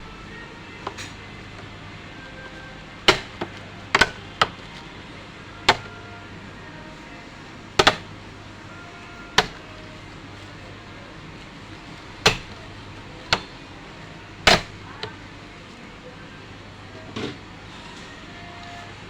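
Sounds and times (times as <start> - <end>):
faint steady hum: 0.0 - 19.0
hard parts clicking and knocking: 0.8 - 1.7, 3.0 - 4.9, 5.6 - 6.0, 7.8 - 8.1, 9.3 - 9.8, 11.9 - 13.6, 14.4 - 15.2.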